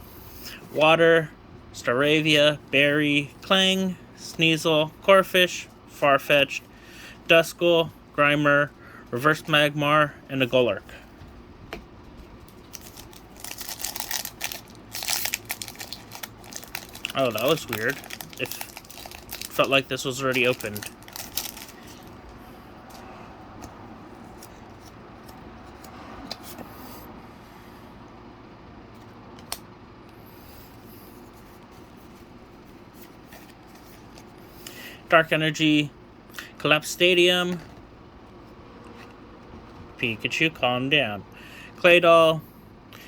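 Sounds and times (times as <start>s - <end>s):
foil wrapper tearing and crinkling: 12.5s - 22.1s
cards rubbing and sliding: 12.5s - 22.2s.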